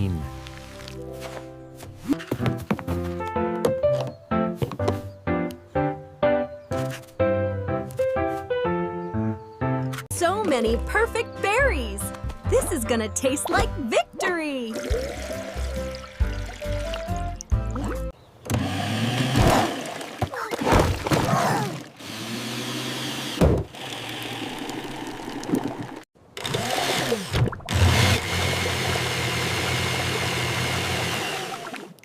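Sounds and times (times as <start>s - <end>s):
electric blender running: 22.0s - 25.4s, 26.4s - 32.0s.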